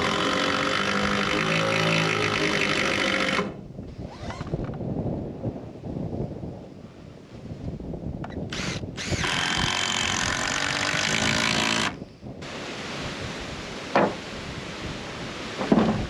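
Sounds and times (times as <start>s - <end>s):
power drill running: 0.0s - 3.5s, 8.5s - 12.0s
wind buffeting microphone: 2.7s - 16.0s.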